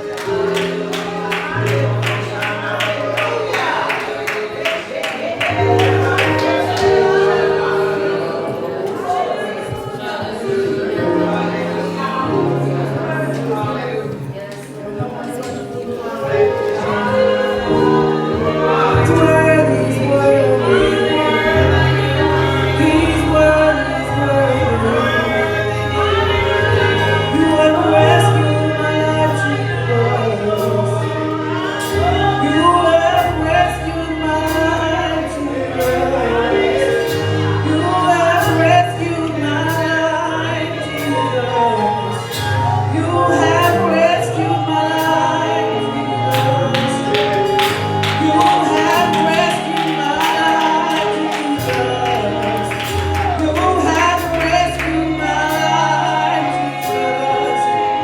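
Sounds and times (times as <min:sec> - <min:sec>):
singers: 0:00.0 - 0:58.0
band with bass: 0:17.0 - 0:58.0.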